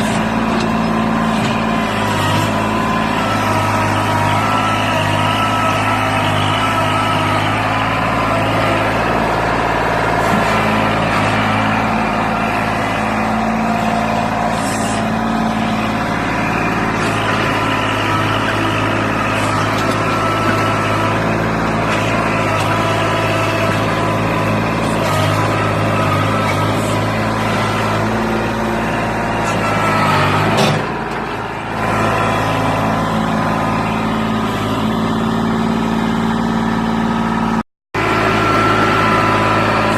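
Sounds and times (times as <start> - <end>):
road noise: 0.0 - 39.9
vehicle engine running: 0.0 - 39.9.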